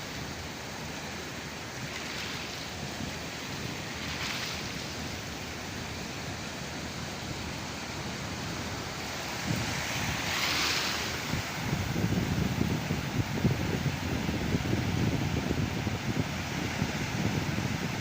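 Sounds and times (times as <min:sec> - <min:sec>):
waves breaking: 0:00.0 - 0:18.0
wind buffeting microphone: 0:09.4 - 0:18.0.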